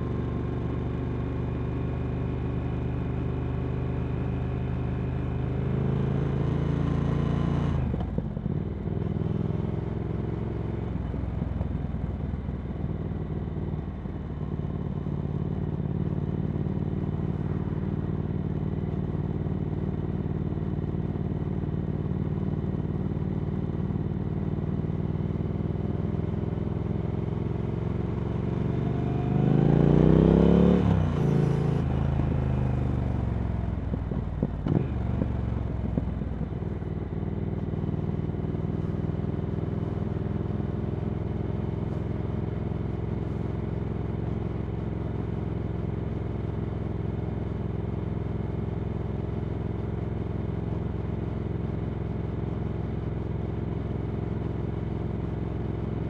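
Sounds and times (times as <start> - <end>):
motorcycle engine revving: 28.0 - 36.0.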